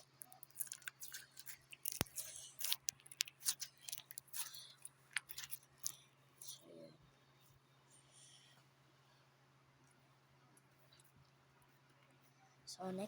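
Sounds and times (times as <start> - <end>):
slime squished in hands: 0.0 - 6.0.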